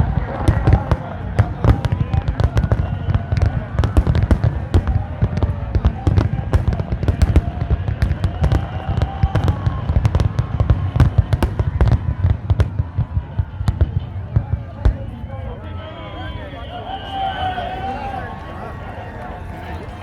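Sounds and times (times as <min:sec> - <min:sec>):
fireworks bangs and crackles: 0:00.0 - 0:15.7.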